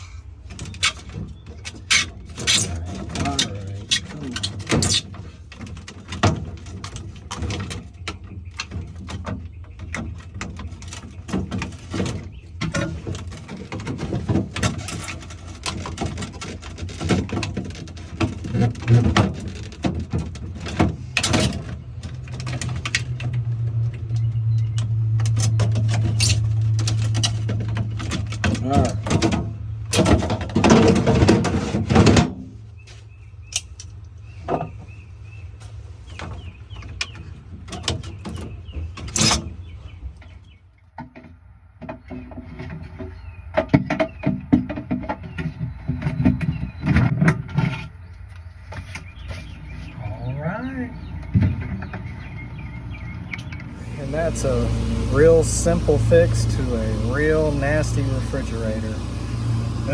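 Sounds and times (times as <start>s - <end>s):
steady low hum: 49.0s - 59.9s.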